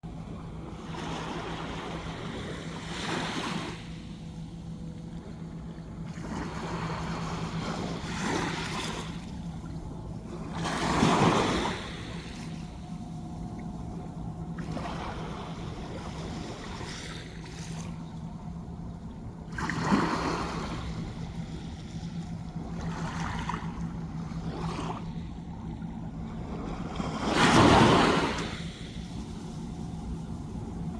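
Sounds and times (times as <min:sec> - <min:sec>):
steady low hum: 0:00.0 - 0:30.9.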